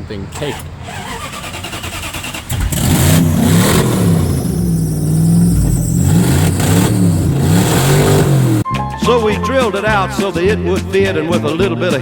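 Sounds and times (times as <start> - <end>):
vehicle engine revving: 0.4 - 8.7.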